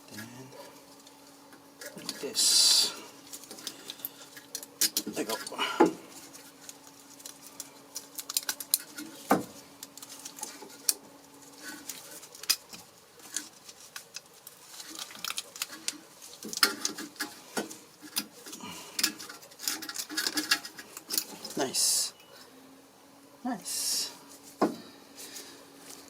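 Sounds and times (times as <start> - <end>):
faint hum: 0.0 - 26.0
metal clips clicking and scraping: 18.0 - 21.6.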